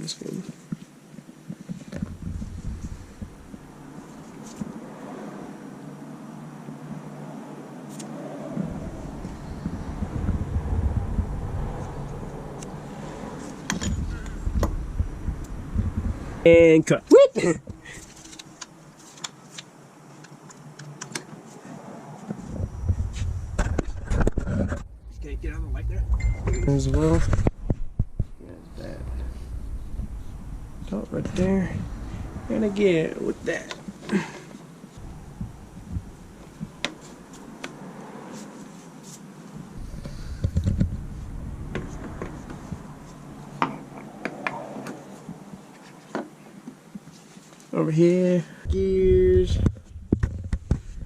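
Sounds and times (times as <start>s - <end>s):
faint background noise: 0.0s - 51.0s
low rumble: 8.6s - 16.5s, 22.4s - 33.5s, 35.0s - 37.3s, 39.8s - 44.2s
engine parts clicking and knocking: 39.8s - 42.6s.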